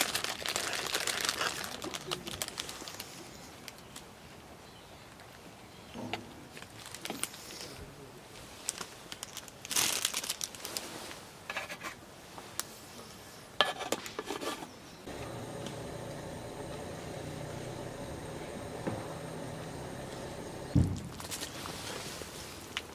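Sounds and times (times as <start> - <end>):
crinkling and rustling: 0.0 - 4.1, 6.0 - 7.8, 8.4 - 12.7, 15.2 - 22.9
steady hum: 15.1 - 21.2.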